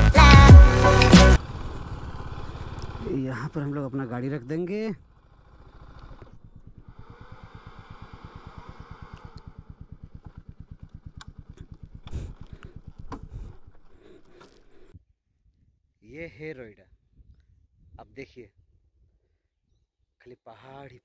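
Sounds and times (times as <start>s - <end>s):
motorcycle engine idling: 0.5s - 14.9s.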